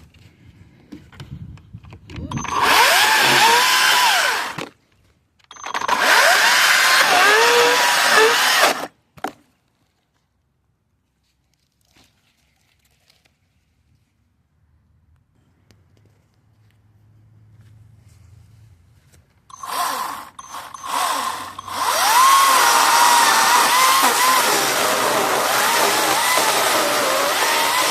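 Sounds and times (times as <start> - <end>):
electric chainsaw whining: 2.3 - 4.7, 5.6 - 8.9, 19.5 - 27.9.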